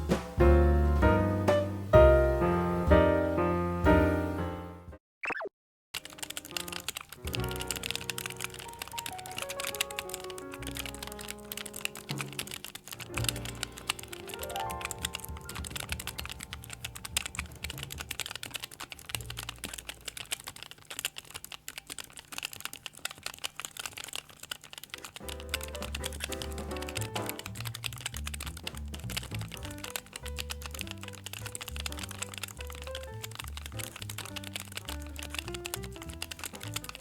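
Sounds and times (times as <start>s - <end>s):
background music: 0.0s - 4.9s, 6.0s - 18.8s, 25.2s - 27.8s
mechanical keyboard typing: 6.0s - 37.0s.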